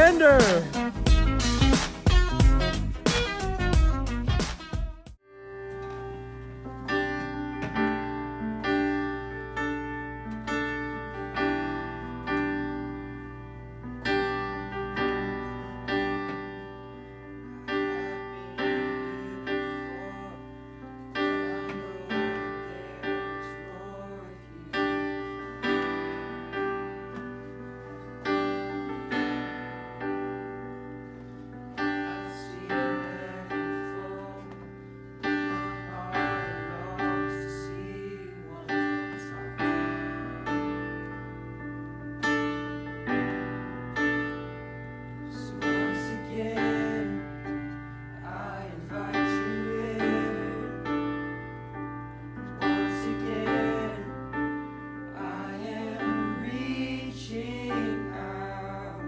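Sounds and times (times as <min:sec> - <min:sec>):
piano chords: 0:00.0 - 0:59.0
singing: 0:52.7 - 0:54.3.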